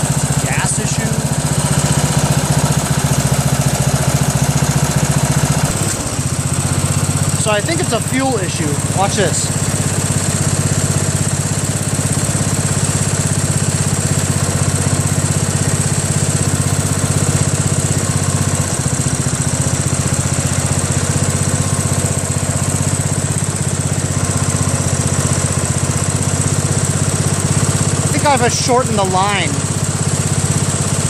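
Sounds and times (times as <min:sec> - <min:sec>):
lawn tractor engine running: 0:00.0 - 0:31.0
person speaking: 0:00.4 - 0:01.3, 0:07.4 - 0:09.6, 0:28.1 - 0:29.6.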